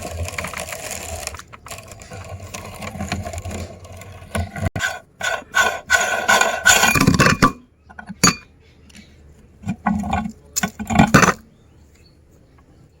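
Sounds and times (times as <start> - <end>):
noodles crunching in meat grinder: 0.0 - 3.4.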